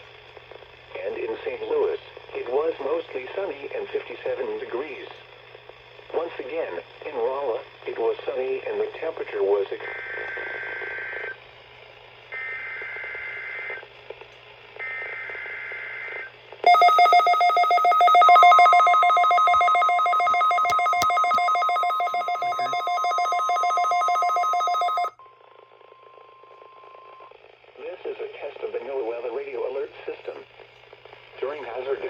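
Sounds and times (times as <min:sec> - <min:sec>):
rapidly pulsing electronic alarm: 0:16.7 - 0:25.1
steady alert tone: 0:16.7 - 0:25.1
two-pitch data bursts: 0:16.7 - 0:25.1.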